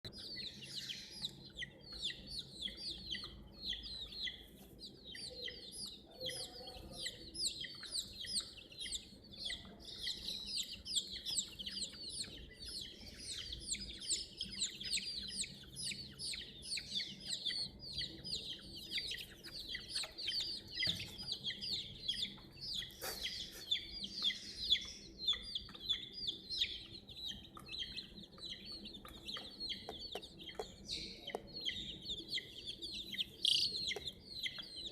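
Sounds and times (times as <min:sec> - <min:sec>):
chicks peeping: 0:00.0 - 0:34.9.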